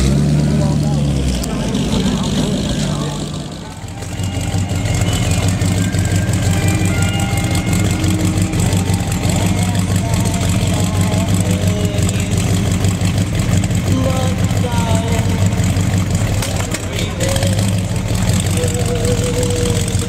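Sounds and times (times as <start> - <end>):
people talking: 0.0 - 15.8, 16.5 - 20.0
car engine idling: 0.0 - 20.0.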